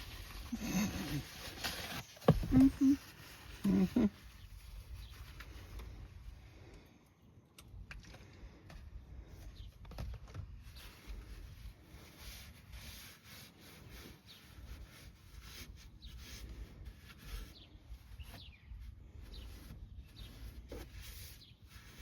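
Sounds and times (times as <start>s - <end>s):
cloth wiping a surface: 0.2s - 4.4s, 11.0s - 22.0s.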